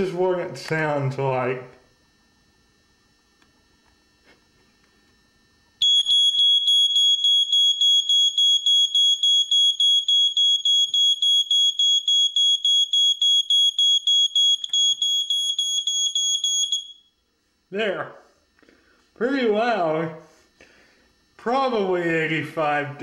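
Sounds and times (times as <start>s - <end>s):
smoke alarm pulsing tone: 5.8s - 17.3s.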